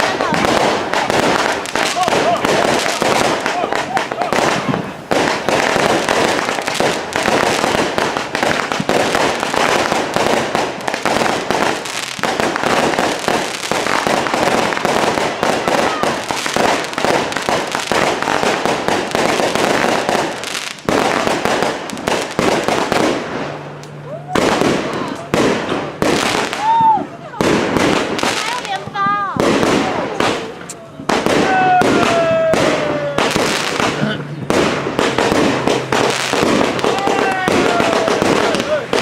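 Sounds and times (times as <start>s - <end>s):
fireworks crackling and popping: 0.0s - 39.0s.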